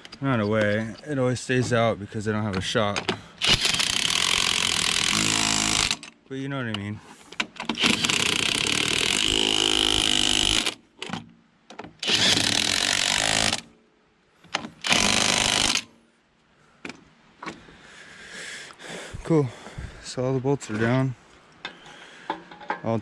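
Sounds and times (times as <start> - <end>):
impact wrench running: 3.4 - 6.1, 7.8 - 10.8, 12.0 - 13.6, 14.8 - 15.9.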